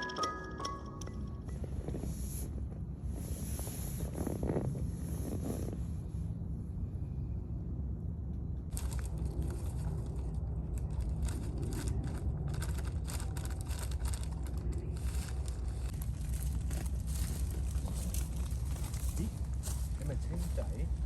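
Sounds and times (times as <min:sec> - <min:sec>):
wind rumbling on microphone: 0:01.4 - 0:21.0
crackling and rustling: 0:08.7 - 0:21.0.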